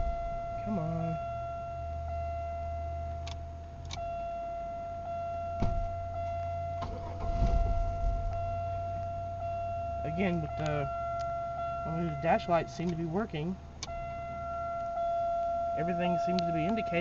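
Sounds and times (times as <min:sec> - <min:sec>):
high-pitched electronic tone: 0:00.0 - 0:03.2
car engine starting and running: 0:00.0 - 0:17.0.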